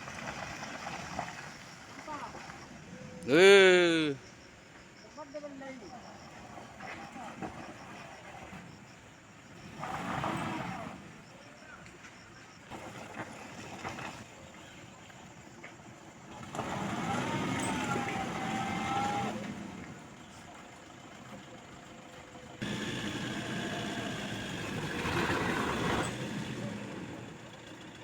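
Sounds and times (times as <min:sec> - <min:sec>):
truck engine revving: 0:09.6 - 0:11.1, 0:16.3 - 0:20.0, 0:22.6 - 0:28.0.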